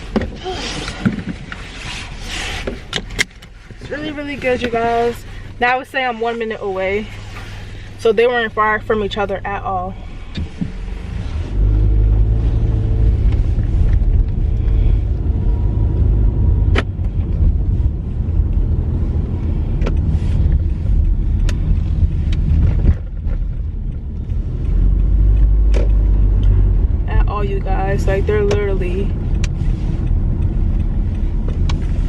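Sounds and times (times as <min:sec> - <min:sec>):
car road and engine rumble: 0:00.0 - 0:32.0
sharp clicks: 0:28.3 - 0:32.0.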